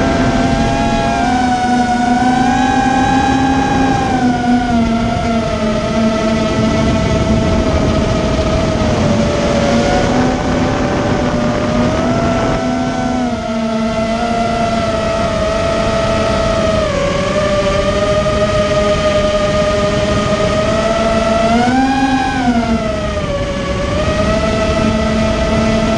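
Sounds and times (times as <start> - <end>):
quadcopter motors whining: 0.0 - 25.9.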